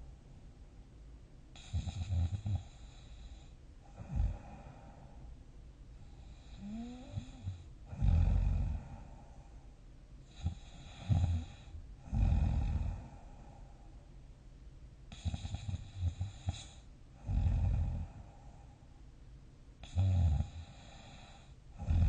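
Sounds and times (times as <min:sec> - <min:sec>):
person snoring: 0:06.2 - 0:09.3, 0:10.3 - 0:13.6, 0:15.1 - 0:18.4, 0:19.8 - 0:22.0.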